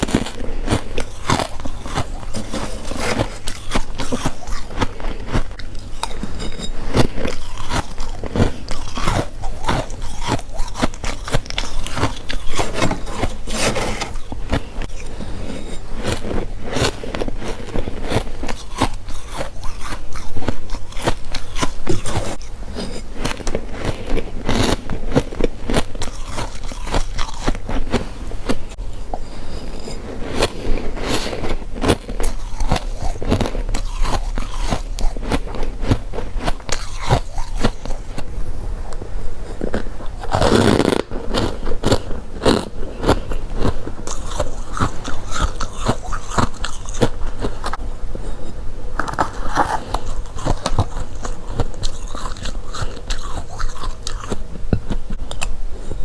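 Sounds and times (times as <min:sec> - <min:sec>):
crunching frost: 0:00.0 - 0:28.7, 0:39.4 - 0:47.8.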